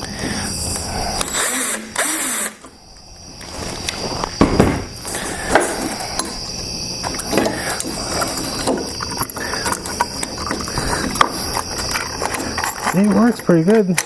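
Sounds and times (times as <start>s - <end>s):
power drill running: 1.1s - 5.8s.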